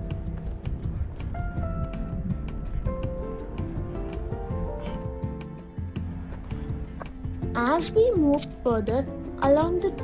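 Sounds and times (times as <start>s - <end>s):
background music with quick beat: 0.0s - 10.0s.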